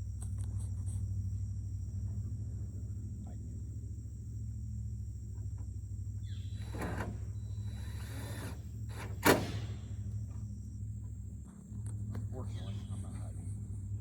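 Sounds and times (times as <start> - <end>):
steady low hum: 0.0 - 14.0
power drill driving a screw: 6.5 - 9.7.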